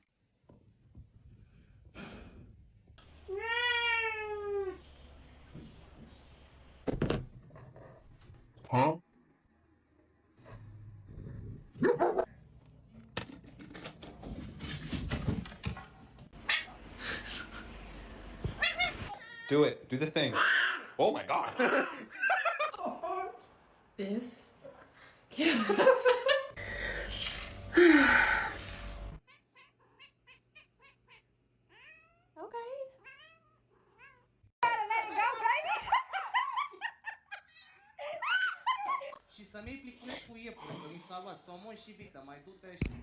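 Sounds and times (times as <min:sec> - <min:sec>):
cat crying: 0:18.6 - 0:19.5, 0:20.3 - 0:20.9.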